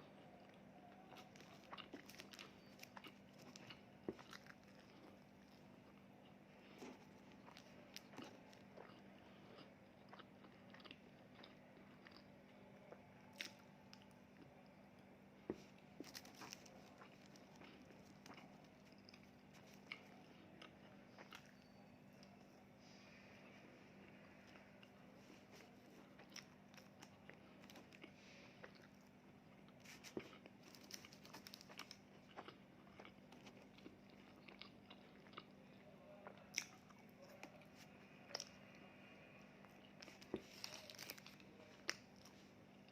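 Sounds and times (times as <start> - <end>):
steady low hum: 0.0 - 42.9
food crunching while chewing: 0.1 - 22.6, 24.1 - 42.9
crisp crunches: 1.1 - 5.7, 15.5 - 20.2, 29.7 - 35.4, 39.8 - 42.9.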